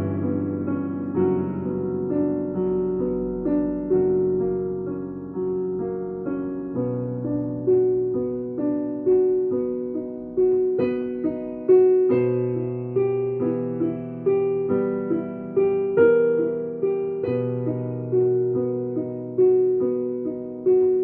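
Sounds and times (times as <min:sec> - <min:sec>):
slow piano tune: 0:00.0 - 0:21.0.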